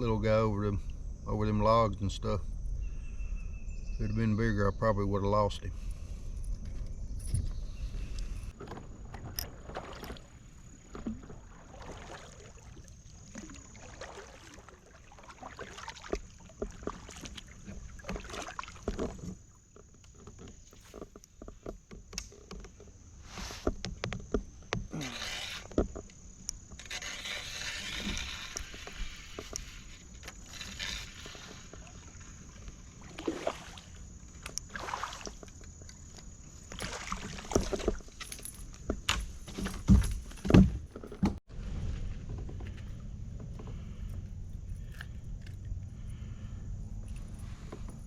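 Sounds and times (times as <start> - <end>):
knocks and scrapes against hull: 6.5 - 12.4, 15.5 - 33.6, 35.2 - 46.2
paddle swishing water: 7.8 - 44.1
rush of water: 9.3 - 19.2, 31.8 - 34.0, 34.7 - 35.5.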